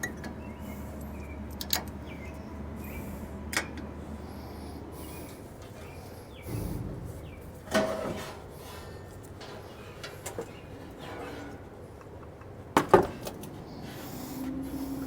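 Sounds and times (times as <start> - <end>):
metal parts clanking and scraping: 5.6 - 13.9.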